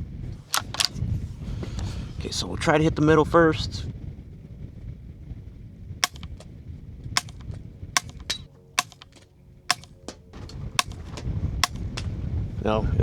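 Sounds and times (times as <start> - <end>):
suppressed rifle shots: 6.0 - 6.4, 7.2 - 9.9, 10.8 - 11.8.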